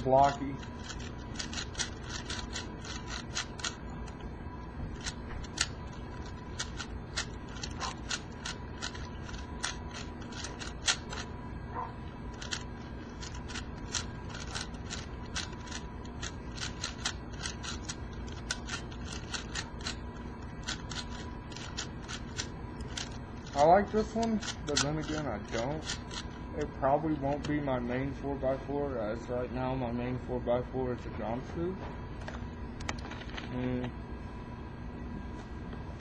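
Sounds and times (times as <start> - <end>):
puzzle cube clicking as turned: 0.6 - 3.8, 5.0 - 11.3, 12.3 - 20.0, 20.6 - 23.6, 24.4 - 26.3.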